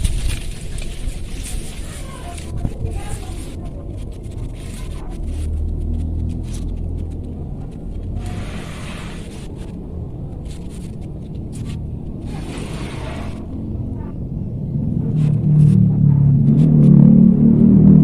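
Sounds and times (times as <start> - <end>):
rustling and scraping: 0.0 - 13.8
microphone handling rumble: 0.0 - 18.0.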